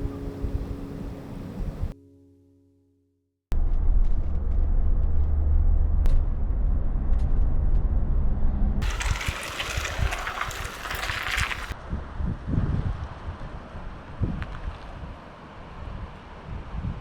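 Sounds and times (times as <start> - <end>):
stream flowing: 8.8 - 11.8.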